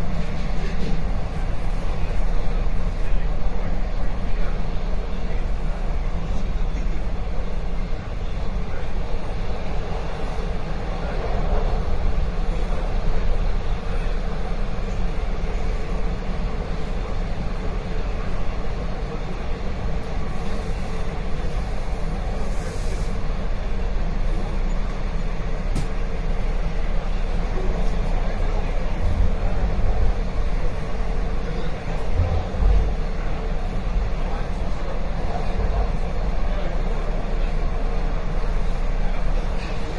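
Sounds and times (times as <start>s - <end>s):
subway train rumbling: 0.0s - 39.9s.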